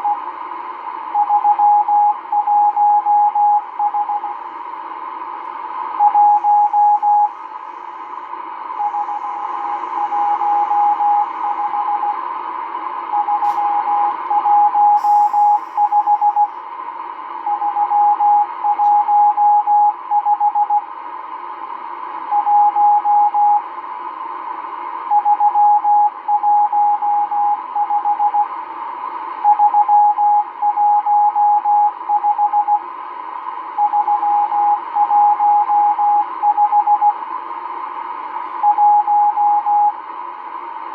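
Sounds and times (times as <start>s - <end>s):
morse code beeps: 1.2s - 4.4s, 6.0s - 7.3s, 8.8s - 12.2s, 13.1s - 16.5s.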